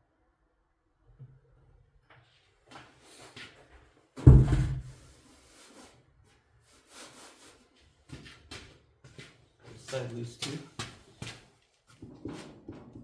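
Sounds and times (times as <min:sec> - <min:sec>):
heavy thump: 0:04.2 - 0:04.9
soft knocks: 0:04.2 - 0:04.9.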